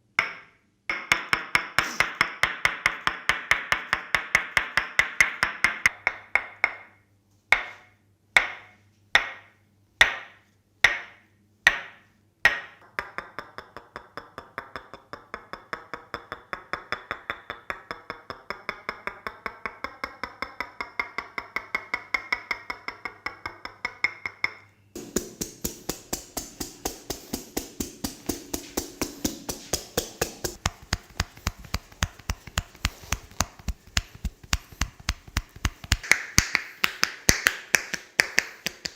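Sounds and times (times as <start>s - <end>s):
hands tapping on skin: 25.0s - 38.9s.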